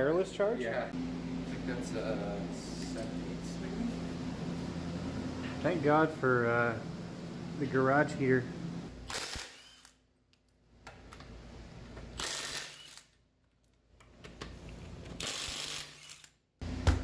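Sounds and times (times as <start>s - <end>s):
ratchet wrench clicking: 15.2s - 16.4s.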